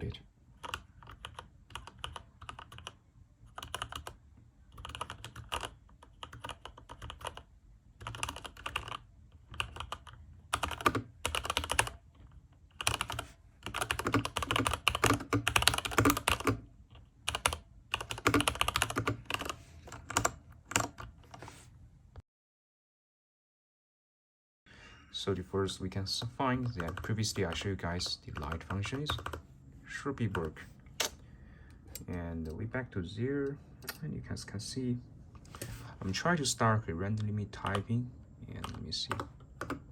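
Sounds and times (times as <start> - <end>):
typing on mechanical keyboard: 0.6 - 12.0, 12.7 - 16.6, 17.3 - 21.4, 26.6 - 27.6, 28.3 - 29.4, 38.6 - 39.9.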